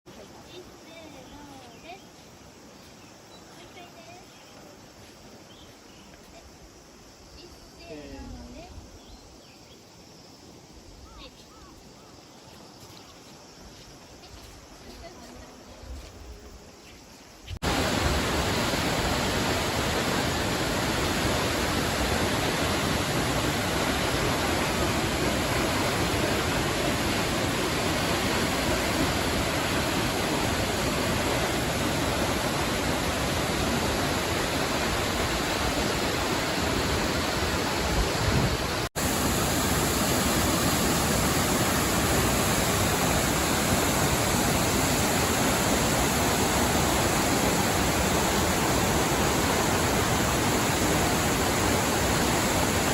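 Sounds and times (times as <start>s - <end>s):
waterfall rushing: 17.6s - 52.9s.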